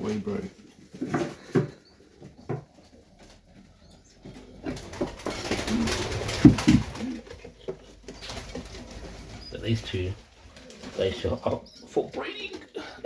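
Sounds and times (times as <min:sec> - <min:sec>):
pigeons cooing softly: 0:00.0 - 0:13.0.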